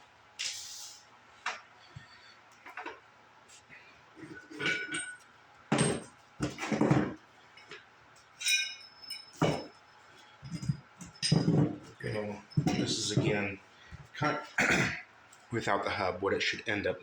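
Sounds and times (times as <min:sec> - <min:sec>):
metal parts knocking and clattering: 0:04.6 - 0:07.2, 0:10.5 - 0:11.9
ringing metallic clink: 0:08.4 - 0:09.7.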